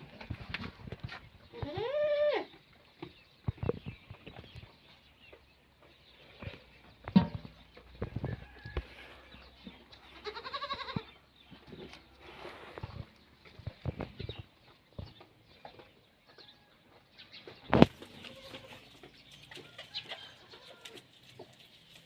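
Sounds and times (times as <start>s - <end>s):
goat bleating: 1.5s - 2.5s, 10.1s - 11.2s, 18.0s - 18.9s.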